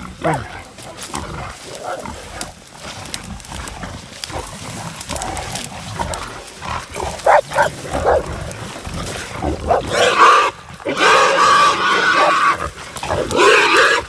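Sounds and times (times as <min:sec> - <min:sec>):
crackling clicks: 0:00.7 - 0:10.1
hog squealing: 0:07.1 - 0:08.3, 0:09.4 - 0:14.0.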